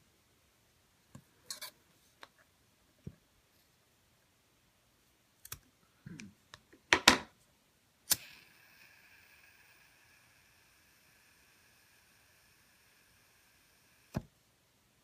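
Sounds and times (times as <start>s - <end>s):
lighter clicking: 8.1s - 8.9s
lighter flame hissing: 8.1s - 14.2s.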